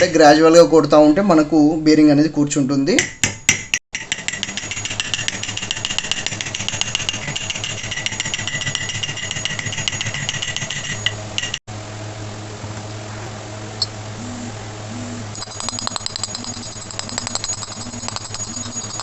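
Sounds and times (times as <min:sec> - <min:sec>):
hammer tapping metal: 0:03.0 - 0:11.6, 0:15.4 - 0:19.0
steady low hum: 0:04.5 - 0:19.0.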